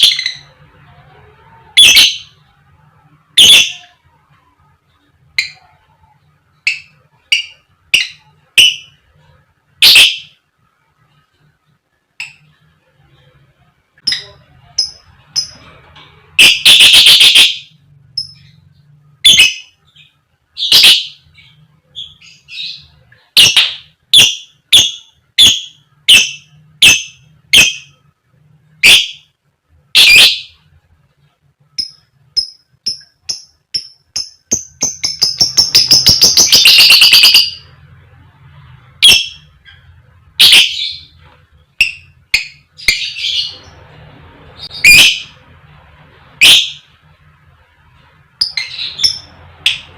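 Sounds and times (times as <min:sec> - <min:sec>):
lovebird calls: 0:09.8 - 0:10.4, 0:16.4 - 0:18.5, 0:19.2 - 0:28.0, 0:31.8 - 0:37.6, 0:39.0 - 0:39.5, 0:40.4 - 0:41.2, 0:44.6 - 0:45.4, 0:46.4 - 0:46.9
fast rattling bird calls: 0:31.8 - 0:37.6.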